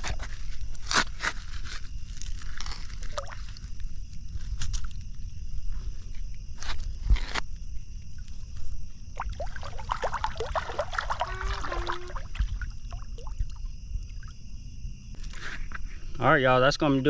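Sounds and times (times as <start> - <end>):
night insects chirring: 0.0 - 17.0
water splashing: 9.1 - 14.4.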